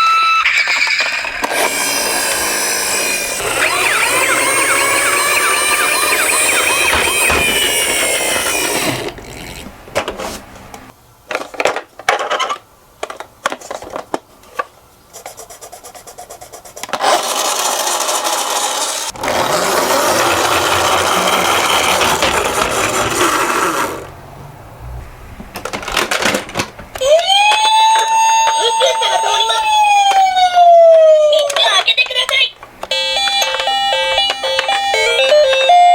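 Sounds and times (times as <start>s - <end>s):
toy cars rolling: 0.6s - 10.2s, 16.2s - 24.1s, 25.5s - 30.2s
toy cars clattering together: 1.0s - 10.2s, 11.3s - 14.7s, 16.8s - 24.1s, 25.6s - 29.6s.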